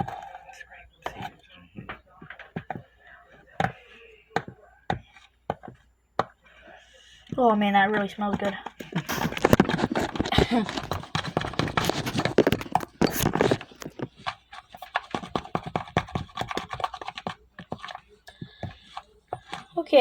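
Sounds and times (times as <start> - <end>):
utensil scraping cookware: 7.9 - 20.0.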